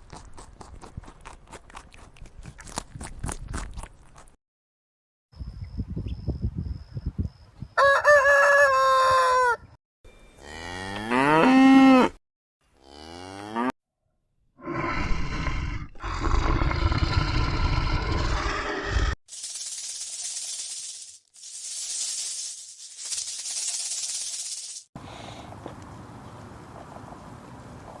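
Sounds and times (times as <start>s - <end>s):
rooster crowing: 7.8s - 9.8s
cattle mooing: 10.4s - 12.2s.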